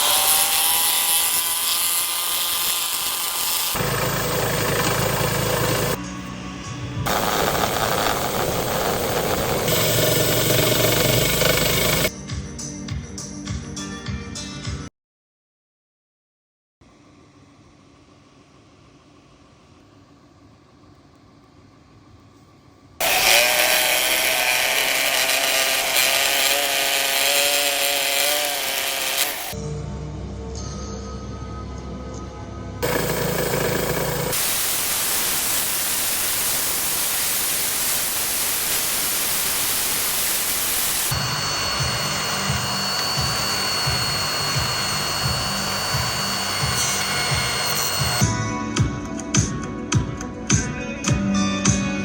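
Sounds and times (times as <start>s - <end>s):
motor humming: 0.0s - 6.0s, 7.0s - 12.1s, 23.0s - 29.6s, 32.8s - 48.2s
rough wood cutting noise: 0.0s - 6.0s, 7.1s - 12.1s, 23.0s - 29.6s, 32.8s - 35.6s, 38.1s - 48.2s
high hissing grind: 7.1s - 12.1s, 32.8s - 48.2s.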